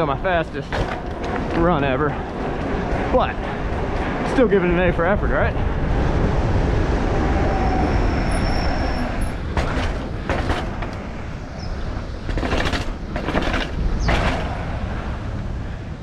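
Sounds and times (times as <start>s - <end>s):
bike clattering over bumps: 0.0s - 4.6s, 9.3s - 15.0s
bike tyres rumbling: 0.0s - 16.0s
wind rushing over microphone: 0.0s - 16.0s.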